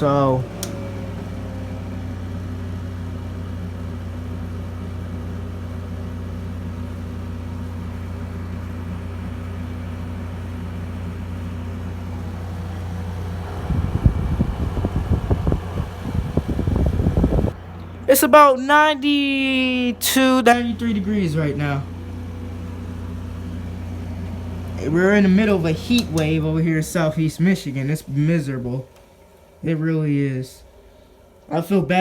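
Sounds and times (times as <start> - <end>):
air conditioner humming: 0.0 - 32.0
low rumbling and thumps: 11.1 - 18.1.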